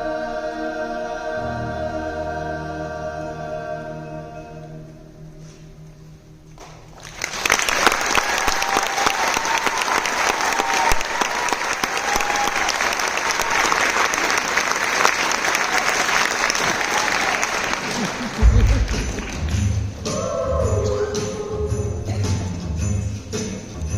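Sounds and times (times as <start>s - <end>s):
choir singing: 0.0s - 5.3s, 18.4s - 22.4s
audience applauding: 6.9s - 19.9s
audience cheering: 7.2s - 20.2s.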